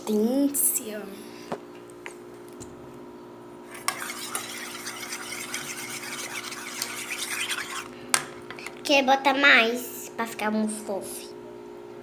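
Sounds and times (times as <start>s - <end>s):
faint steady hum: 0.0s - 12.0s
utensil stirring and scraping slime: 3.7s - 8.0s.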